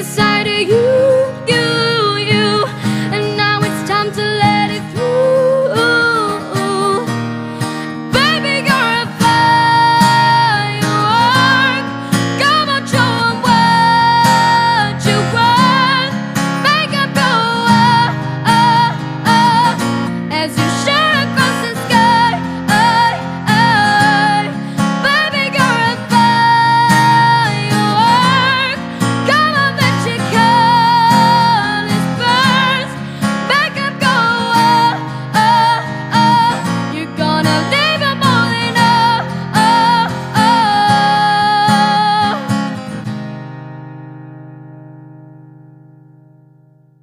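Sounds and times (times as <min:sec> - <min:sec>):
acoustic guitar strumming: 0:00.0 - 0:47.0.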